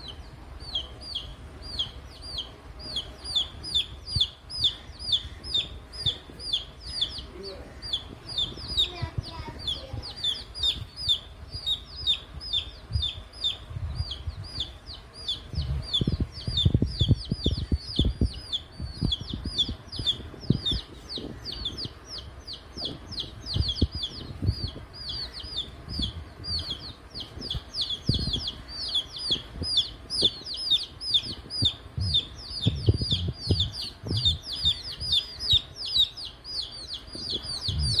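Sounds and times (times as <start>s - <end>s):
chicks peeping: 0.0s - 38.0s.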